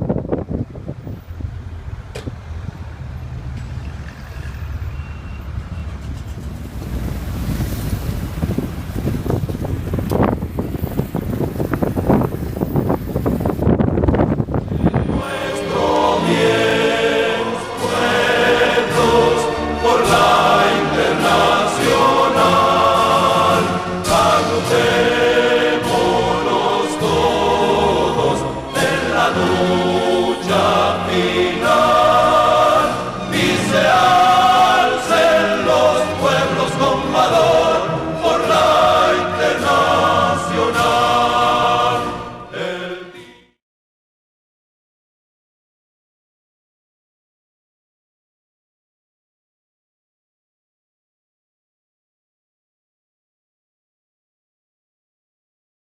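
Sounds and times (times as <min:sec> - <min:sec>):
voices singing wavering notes: 0:14.8 - 0:43.5.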